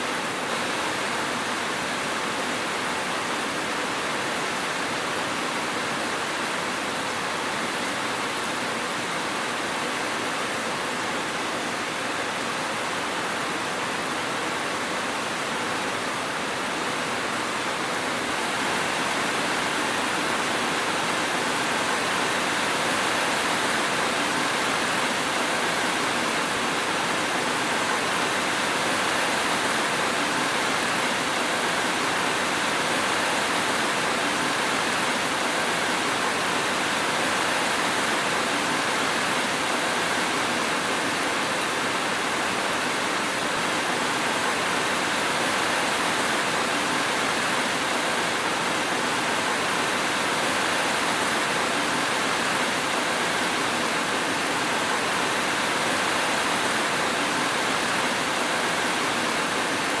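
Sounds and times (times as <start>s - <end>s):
steady rain: 0.0s - 60.0s.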